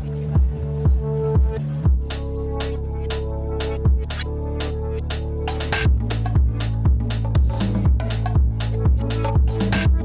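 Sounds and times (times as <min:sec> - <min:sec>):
deep sliding bass: 0:00.0 - 0:10.0
held synth chords: 0:02.0 - 0:10.0
sharp electronic beat: 0:03.6 - 0:10.0.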